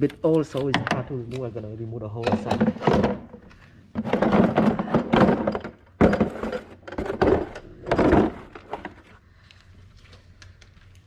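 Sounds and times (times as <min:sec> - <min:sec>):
car part thunking and clattering: 0:02.2 - 0:09.0.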